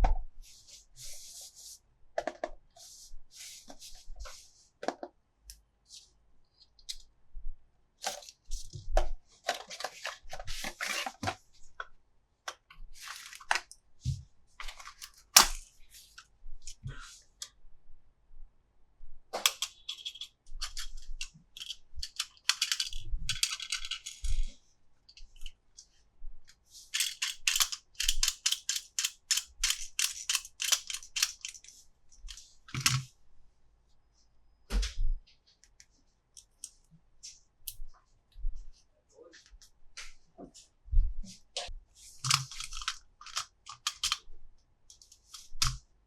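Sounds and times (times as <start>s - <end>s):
plastic clicking and crinkling: 8.0s - 13.8s, 14.6s - 15.6s, 19.4s - 24.6s, 26.9s - 33.1s, 41.6s - 44.3s.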